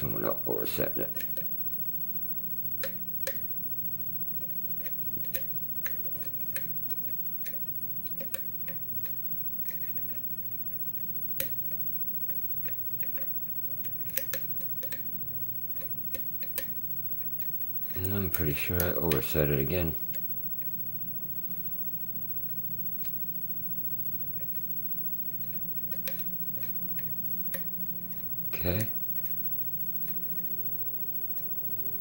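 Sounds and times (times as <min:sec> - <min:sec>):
faint low hum: 0:00.0 - 0:32.0.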